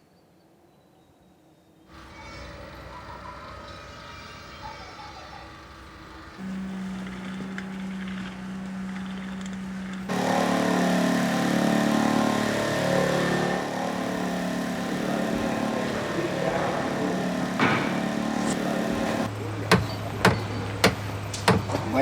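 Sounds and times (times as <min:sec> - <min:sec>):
engine running: 0:04.6 - 0:22.0.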